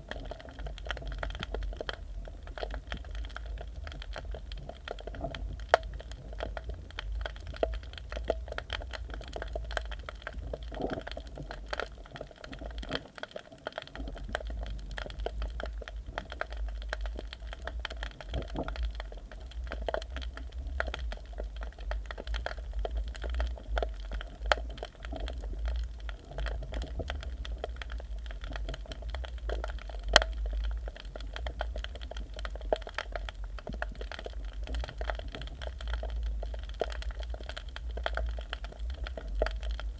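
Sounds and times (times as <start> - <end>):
crackling clicks: 0.0 - 39.9
low underwater rumble: 13.9 - 39.9.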